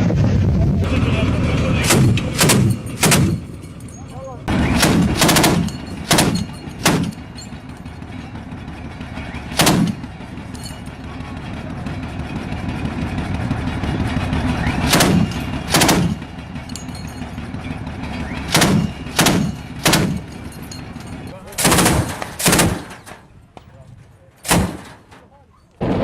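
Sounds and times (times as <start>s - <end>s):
steady low rumble: 0.0s - 26.0s
gunshots with echoes: 1.8s - 3.4s, 4.5s - 7.2s, 9.5s - 10.1s, 14.8s - 16.3s, 18.5s - 20.3s, 21.6s - 23.0s, 24.4s - 25.2s.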